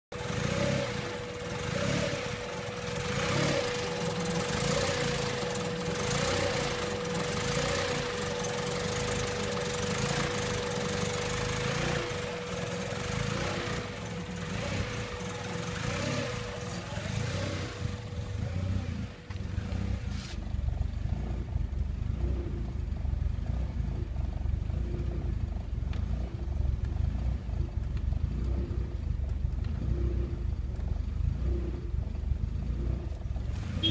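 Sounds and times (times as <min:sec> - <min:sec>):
engine idling roughly: 0:00.1 - 0:33.9
steady thin whine: 0:00.9 - 0:18.4.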